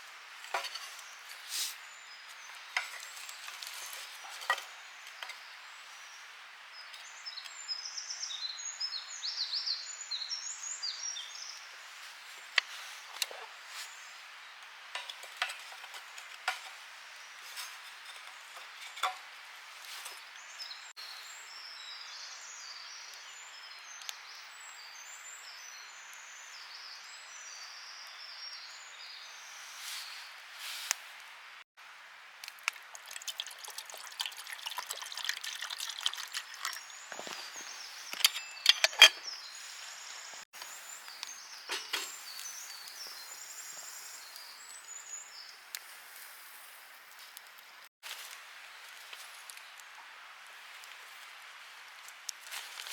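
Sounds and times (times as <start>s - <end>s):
small birds chirping: 0.0s - 30.4s, 35.1s - 47.9s
campfire crackling and popping: 32.4s - 37.4s.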